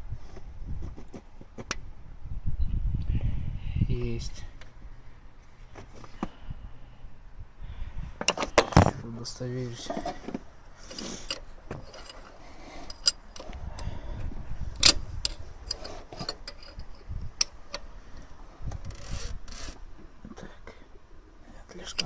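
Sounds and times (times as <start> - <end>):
light metallic clicks and knocks: 9.8 - 13.6.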